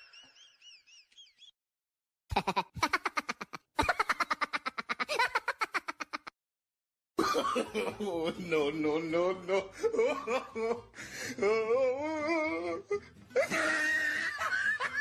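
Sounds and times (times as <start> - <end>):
rapid cackling laugh: 2.3 - 6.3.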